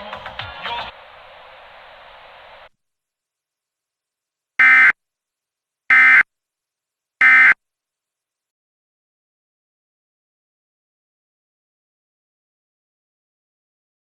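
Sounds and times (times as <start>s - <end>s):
faint hiss: 0.0s - 4.9s.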